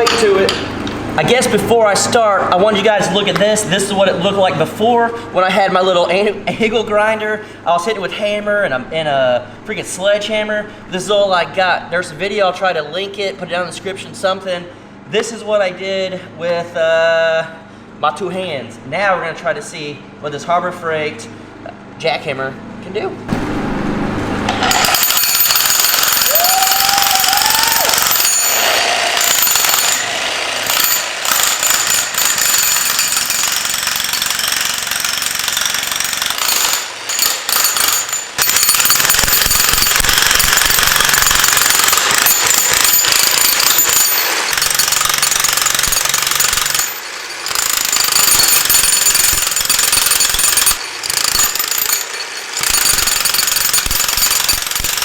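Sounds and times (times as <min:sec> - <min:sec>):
jackhammer hammering into concrete: 0:00.0 - 0:02.1, 0:23.3 - 0:23.9, 0:24.5 - 0:55.0.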